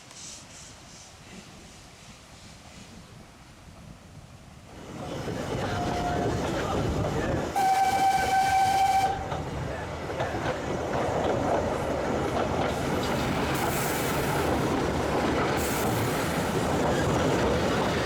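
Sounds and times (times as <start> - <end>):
train running along rails: 0.0 - 18.0
steam whistle: 7.6 - 9.3.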